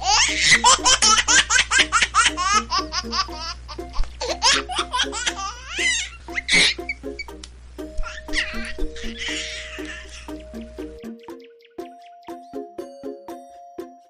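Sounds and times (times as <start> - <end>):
background music: 0.0 - 14.0
high-pitched laughter: 4.2 - 7.0, 8.0 - 10.3.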